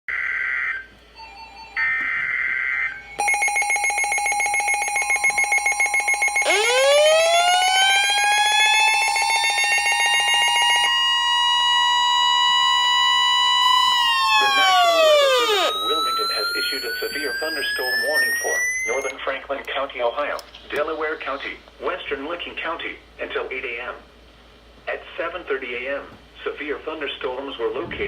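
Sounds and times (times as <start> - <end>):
fast-pulsing electronic alarm beep: 3.2 - 19.1
siren-like rising tone: 4.6 - 19.1
digital data chirps: 8.2 - 10.9, 14.4 - 19.1.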